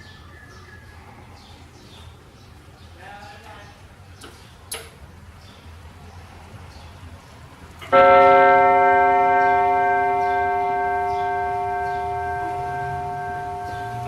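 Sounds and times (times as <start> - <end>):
clock gong ringing: 7.9 - 14.0.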